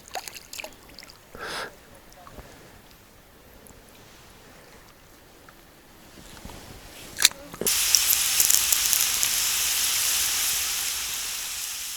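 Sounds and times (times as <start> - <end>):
food sizzling in hot oil: 7.7 - 11.9.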